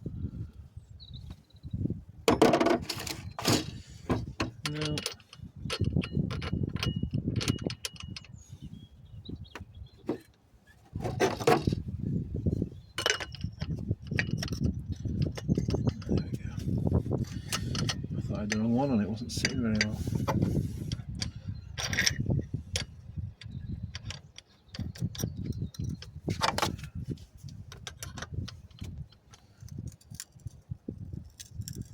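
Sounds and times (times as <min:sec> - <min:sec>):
handling knocks and clicks: 0:02.3 - 0:08.4, 0:09.5 - 0:11.9, 0:13.0 - 0:31.9
small objects clicking: 0:31.2 - 0:31.9.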